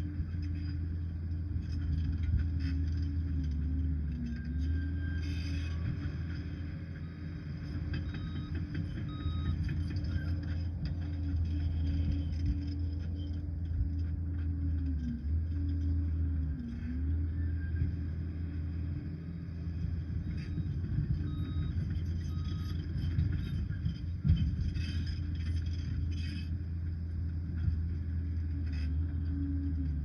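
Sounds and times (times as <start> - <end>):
diesel engine running hard: 0.0 - 30.0
short high beeps: 8.0 - 10.4.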